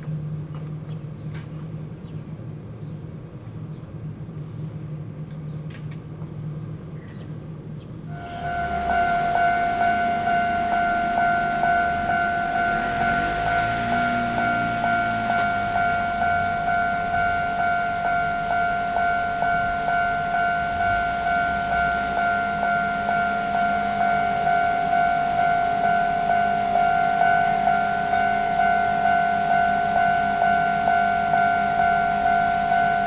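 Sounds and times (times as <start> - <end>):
level crossing warning bell: 8.1 - 33.0.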